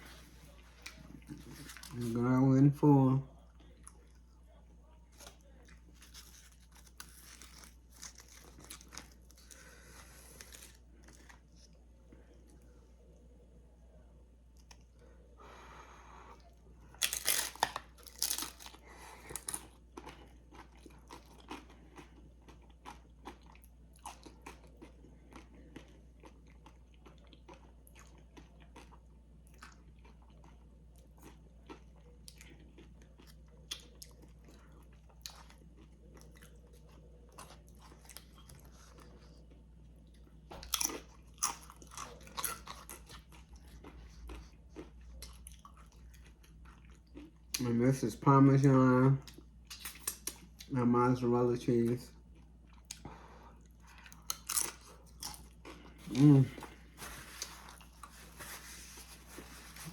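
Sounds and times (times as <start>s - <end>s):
chips crunching and chewing: 5.1s - 11.8s, 16.9s - 47.8s, 53.9s - 59.9s.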